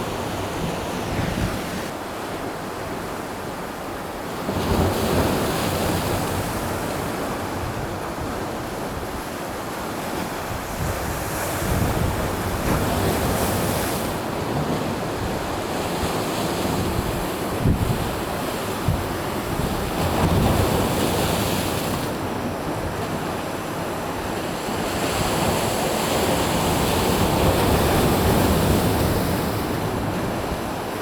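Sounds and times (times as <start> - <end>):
wind buffeting microphone: 0.0 - 1.9, 10.4 - 14.4.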